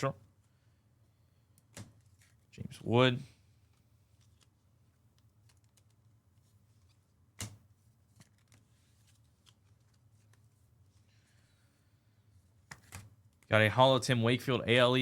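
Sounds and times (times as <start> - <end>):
trading cards being handled: 1.5 - 2.5, 3.6 - 11.2, 12.5 - 13.5.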